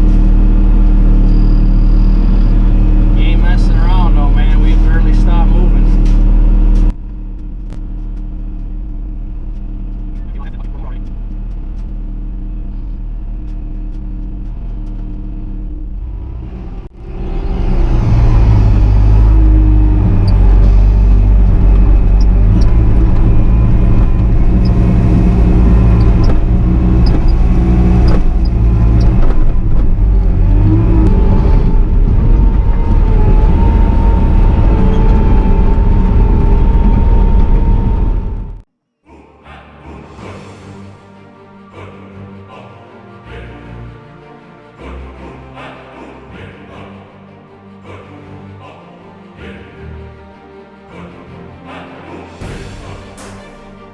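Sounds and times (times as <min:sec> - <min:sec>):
diesel engine running: 0:00.0 - 0:38.7
thin hydraulic whine: 0:00.4 - 0:04.0.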